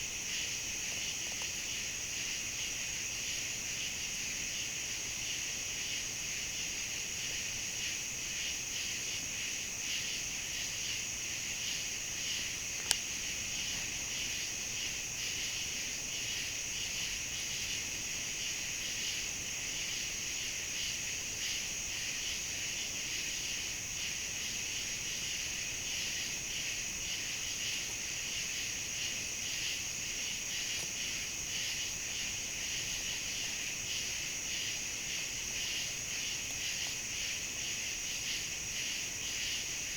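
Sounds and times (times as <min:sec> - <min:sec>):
crickets and insects chirping: 0:00.0 - 0:39.9.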